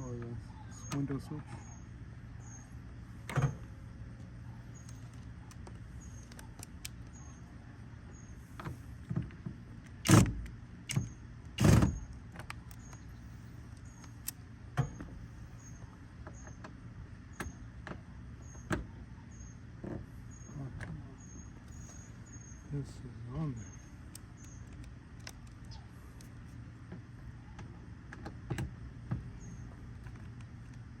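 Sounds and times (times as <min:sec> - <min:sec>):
steady low hum: 0:00.0 - 0:31.0
faint high chirp: 0:00.4 - 0:02.8, 0:07.1 - 0:07.5, 0:18.4 - 0:19.6, 0:20.3 - 0:22.8.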